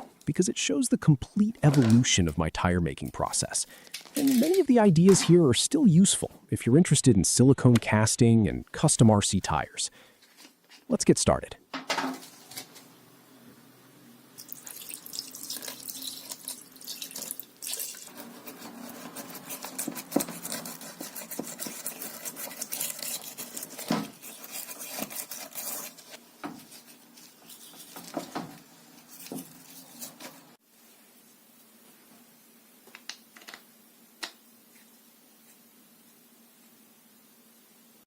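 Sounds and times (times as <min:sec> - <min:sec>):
running water: 0:14.4 - 0:25.3.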